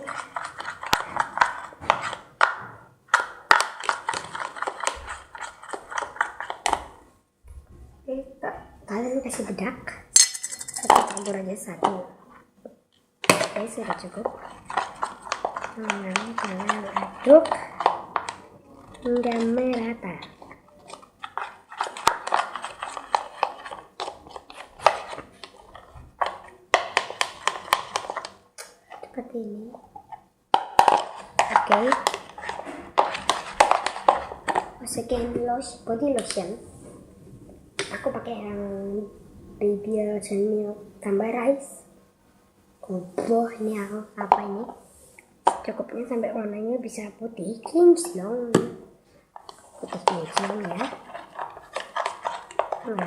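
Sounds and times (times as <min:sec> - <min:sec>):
utensil stirring wet slime: 0:00.0 - 0:07.1, 0:13.2 - 0:36.6, 0:47.0 - 0:53.0.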